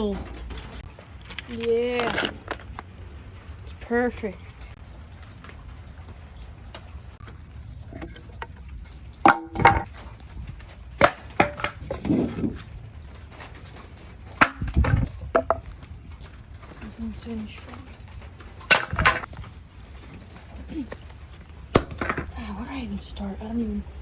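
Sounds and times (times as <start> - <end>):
wooden pieces knocking: 8.2 - 9.9, 10.9 - 12.6, 13.2 - 16.9, 17.9 - 20.3, 21.0 - 22.3.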